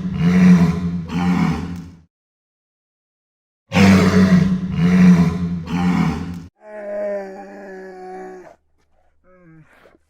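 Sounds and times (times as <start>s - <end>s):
large animal deep rough calls: 0.0s - 1.8s.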